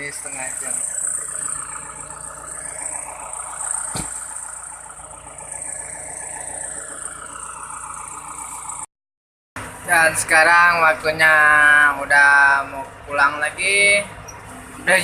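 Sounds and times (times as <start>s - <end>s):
lorry engine running: 0.0s - 8.9s.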